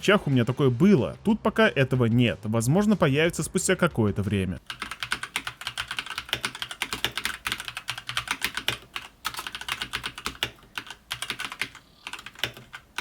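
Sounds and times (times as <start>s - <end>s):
mechanical keyboard typing: 4.6s - 13.0s.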